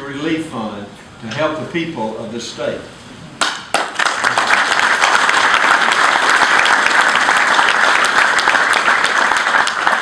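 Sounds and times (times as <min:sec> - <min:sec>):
audience applauding: 0:03.7 - 0:10.0.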